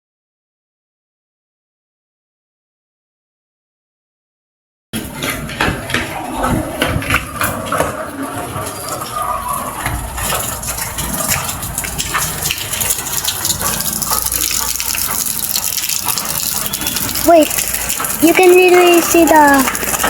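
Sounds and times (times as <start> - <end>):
heavy rain pouring: 5.0 - 20.0.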